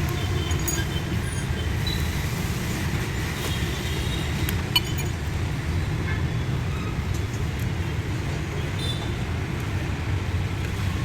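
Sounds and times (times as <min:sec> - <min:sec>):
low rumble of motor vehicles: 0:00.0 - 0:11.0.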